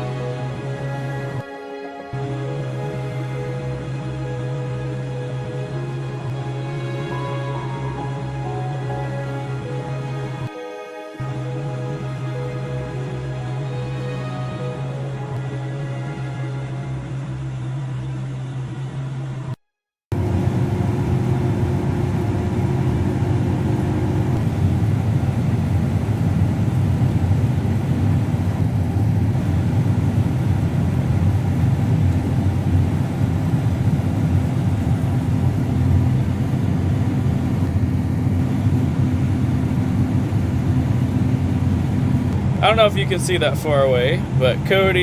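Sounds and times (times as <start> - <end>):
harvester engine droning: 0.0 - 45.0.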